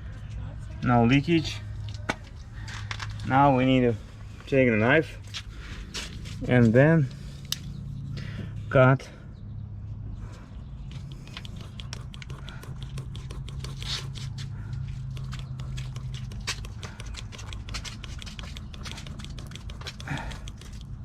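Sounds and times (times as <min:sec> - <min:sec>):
knife scraping rubber: 0:11.0 - 0:21.0.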